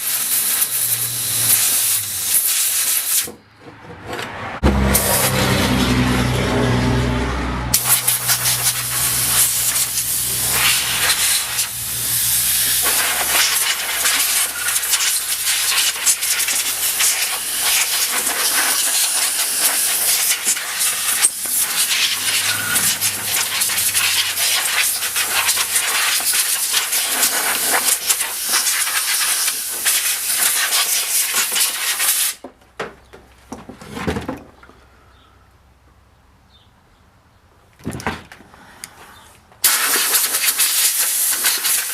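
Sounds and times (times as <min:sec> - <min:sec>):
loud hiss with crackling: 0:00.0 - 0:03.3, 0:07.8 - 0:32.4, 0:39.6 - 0:41.9.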